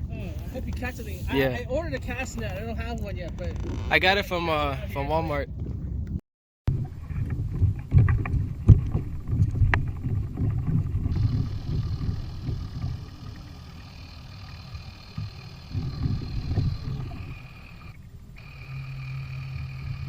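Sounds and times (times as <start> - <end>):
gusting wind rumble: 0.0 - 13.8, 15.2 - 18.4
water noise: 0.0 - 20.0
faint steady hum: 8.5 - 20.0.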